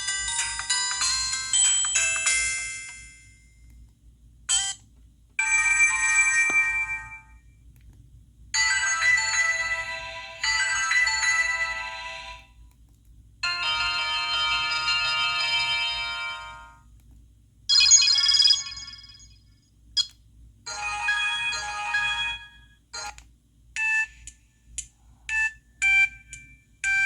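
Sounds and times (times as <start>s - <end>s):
polyphonic phone ringtones: 0.0s - 3.2s, 5.4s - 7.2s, 8.6s - 12.4s, 17.7s - 19.3s.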